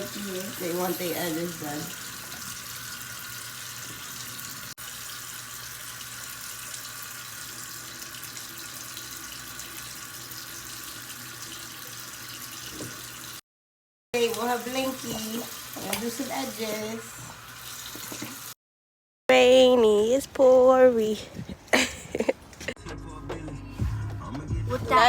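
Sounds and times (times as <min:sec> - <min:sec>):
running water tap hiss: 0:00.0 - 0:13.4, 0:14.2 - 0:18.6.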